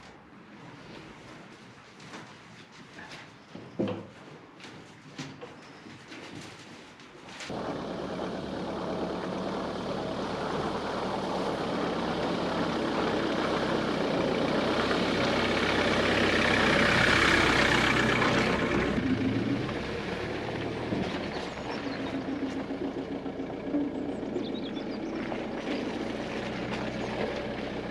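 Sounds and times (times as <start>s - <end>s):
vehicle engine running: 7.5s - 27.9s.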